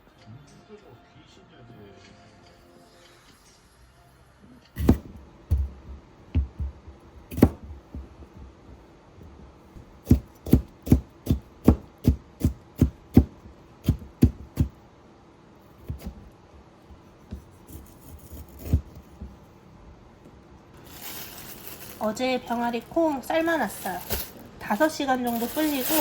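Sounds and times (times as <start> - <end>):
knife chopping on cutting board: 4.8 - 5.8, 7.3 - 8.2, 9.8 - 14.8, 15.8 - 16.3, 16.9 - 19.3.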